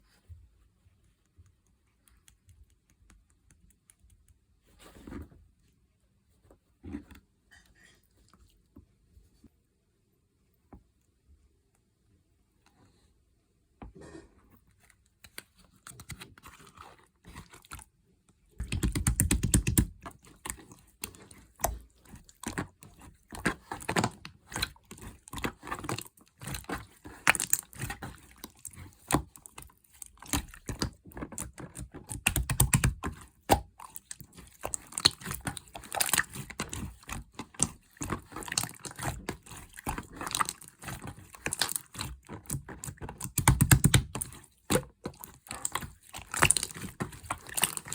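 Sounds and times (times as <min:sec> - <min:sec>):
slime squished by hand: 0:18.6 - 0:47.9.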